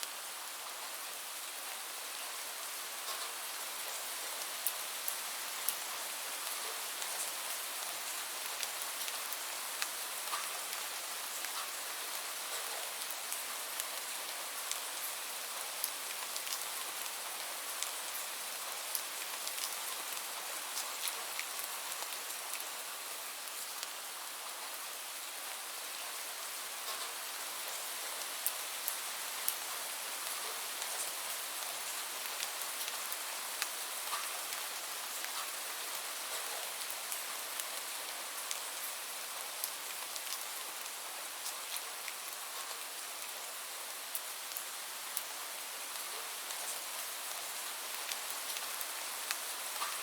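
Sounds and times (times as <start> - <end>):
steady rain hiss: 0.0 - 50.0
raindrops ticking on a surface: 1.7 - 24.8, 25.4 - 50.0.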